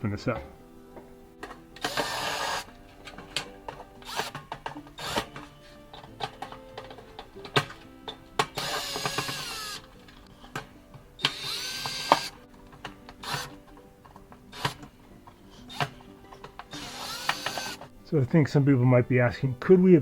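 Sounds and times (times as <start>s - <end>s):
cordless drill running in bursts: 1.8s - 2.7s, 4.0s - 4.4s, 5.0s - 5.3s, 8.6s - 9.8s, 11.2s - 12.4s, 13.2s - 13.6s, 16.7s - 17.9s.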